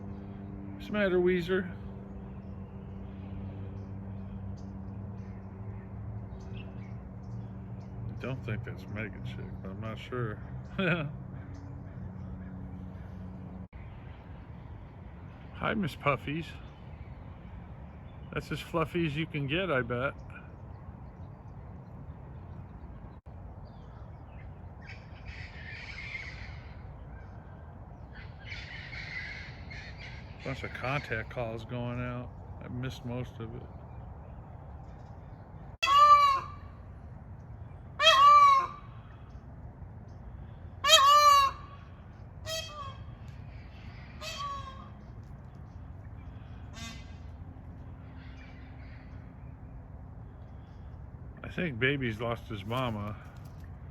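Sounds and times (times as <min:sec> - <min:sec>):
low steady rumble: 0:00.0 - 0:53.9
peafowl honking calls: 0:24.8 - 0:27.3, 0:28.1 - 0:31.3, 0:35.8 - 0:37.0, 0:37.7 - 0:39.3, 0:40.5 - 0:45.2, 0:46.1 - 0:49.3.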